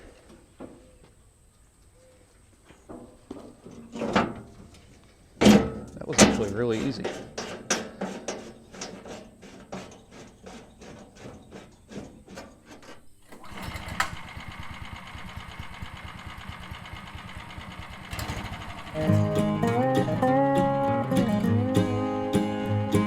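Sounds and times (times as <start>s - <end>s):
sawmill engine running: 13.3s - 23.0s.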